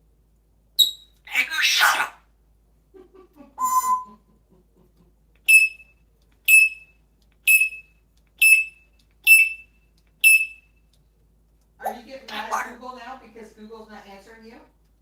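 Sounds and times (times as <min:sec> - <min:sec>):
high alarm beeps: 0:05.5 - 0:05.8, 0:06.5 - 0:06.8, 0:07.5 - 0:07.8, 0:10.2 - 0:10.6.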